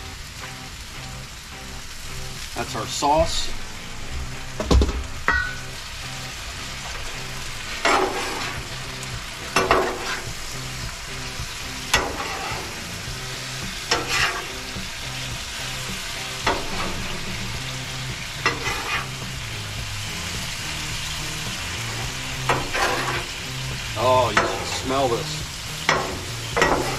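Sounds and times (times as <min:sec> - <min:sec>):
food sizzling on a griddle: 0:00.0 - 0:26.9
spatula scraping griddle: 0:07.7 - 0:08.8, 0:09.4 - 0:10.5, 0:11.8 - 0:14.8, 0:16.2 - 0:17.6, 0:18.3 - 0:19.5, 0:21.5 - 0:23.5, 0:24.3 - 0:26.9.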